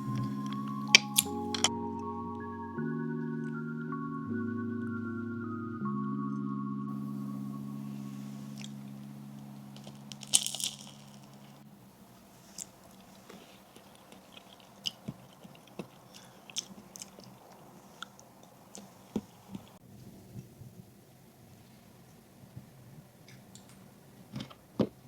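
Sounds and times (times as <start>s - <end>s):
crunchy bite into toast: 9.8s - 11.3s
chewing clicks and crunches: 9.8s - 11.5s, 12.5s - 19.8s.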